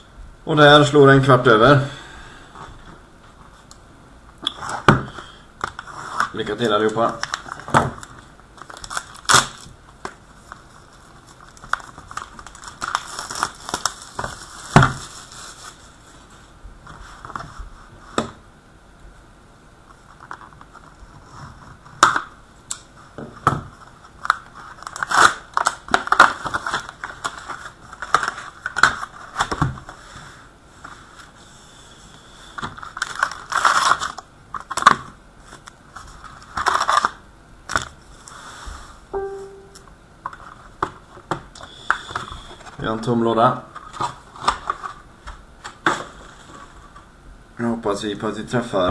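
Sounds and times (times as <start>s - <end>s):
crinkling plastic wrap and foil: 5.6s - 17.4s, 23.8s - 31.4s, 32.4s - 38.5s, 43.7s - 47.0s
cardboard tearing: 7.0s - 9.7s, 11.4s - 15.8s, 24.7s - 29.6s, 33.0s - 35.0s, 36.4s - 37.2s.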